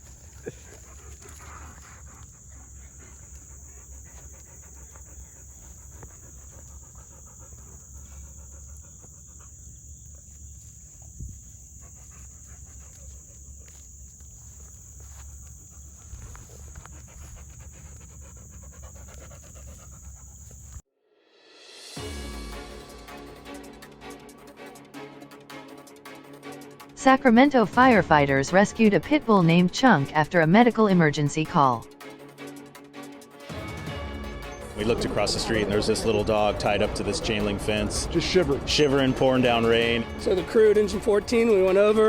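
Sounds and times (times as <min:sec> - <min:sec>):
constant high-pitched tone: 0:00.0 - 0:20.8
dog panting: 0:00.0 - 0:20.8, 0:22.2 - 0:42.0.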